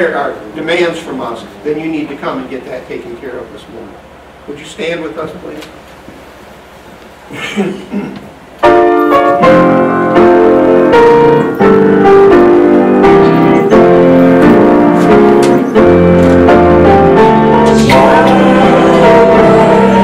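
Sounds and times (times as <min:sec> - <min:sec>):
slow piano chords: 0:08.4 - 0:20.0.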